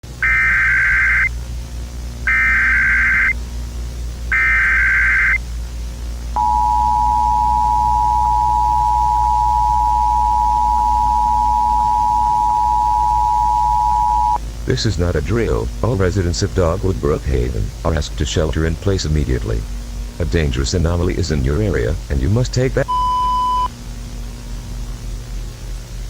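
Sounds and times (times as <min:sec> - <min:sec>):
digital header bursts: 0:00.0 - 0:01.4, 0:02.1 - 0:03.4, 0:04.3 - 0:05.5
two-tone attention signal: 0:00.2 - 0:01.3, 0:02.3 - 0:03.4, 0:04.3 - 0:05.4, 0:06.4 - 0:14.4, 0:22.9 - 0:23.7.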